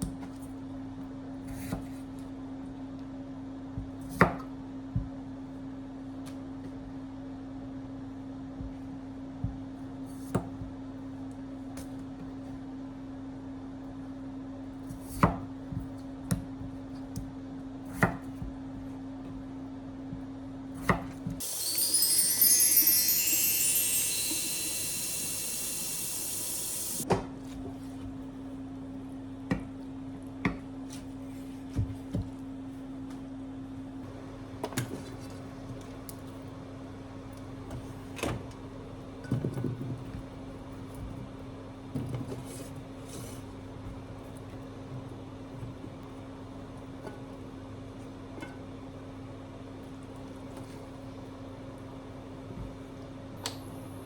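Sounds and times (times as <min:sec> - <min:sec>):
bright chime-like ringing: 0:21.4 - 0:27.0
utensils and dishes clinking: 0:21.4 - 0:27.0.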